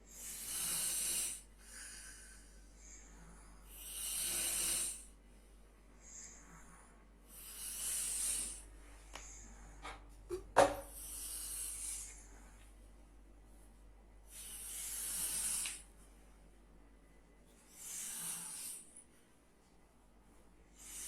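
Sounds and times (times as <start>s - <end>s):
person snoring: 0.0s - 5.2s, 14.3s - 15.8s, 17.8s - 19.0s.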